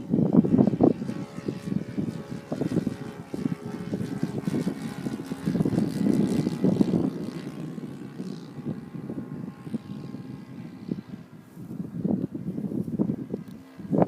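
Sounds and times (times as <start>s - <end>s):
model plane engine and propeller: 0.0s - 14.0s.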